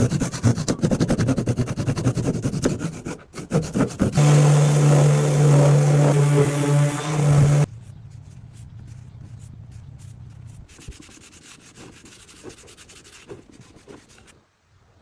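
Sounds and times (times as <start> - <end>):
rubbing strokes on wood: 0.0 - 14.3
power tool motor running: 4.2 - 7.7.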